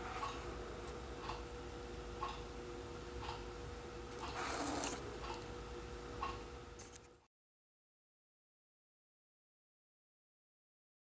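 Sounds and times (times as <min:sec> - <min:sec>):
faint steady hum: 0:00.0 - 0:07.3.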